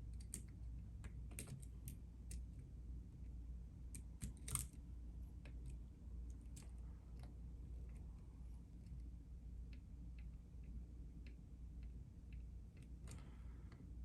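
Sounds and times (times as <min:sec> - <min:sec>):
lock pick clicks and scratches: 0:03.9 - 0:04.8.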